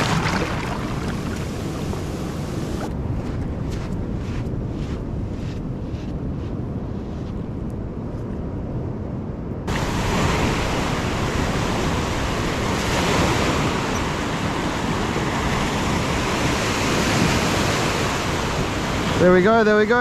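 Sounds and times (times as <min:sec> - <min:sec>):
surf washing over rocks: 0:00.0 - 0:02.9, 0:09.7 - 0:20.0
wind on microphone: 0:00.0 - 0:20.0.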